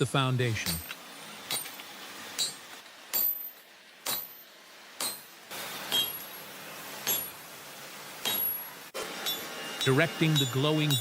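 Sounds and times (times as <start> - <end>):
hammer striking steel on anvil: 0.6 - 1.8, 2.4 - 6.4, 7.0 - 7.4, 8.2 - 11.0.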